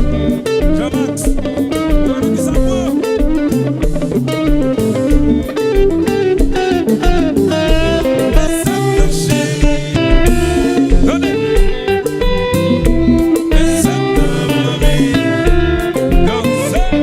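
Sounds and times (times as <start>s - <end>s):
bass line: 0.0s - 17.0s
drum beat: 0.0s - 17.0s
electric guitar runs: 0.0s - 17.0s.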